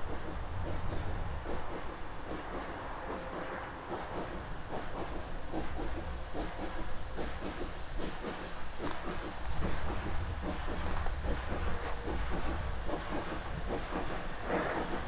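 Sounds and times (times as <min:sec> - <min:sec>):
train rumble: 0:00.0 - 0:15.0
steam hiss: 0:03.4 - 0:15.0
wheels clattering on track: 0:07.4 - 0:15.0.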